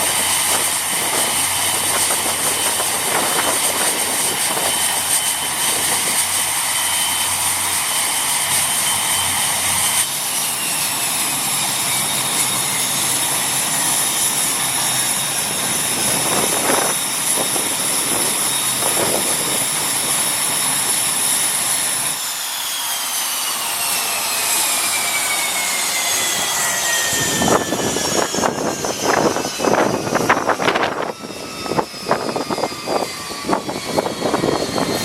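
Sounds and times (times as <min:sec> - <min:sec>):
turbine engine whining: 0:00.0 - 0:35.0.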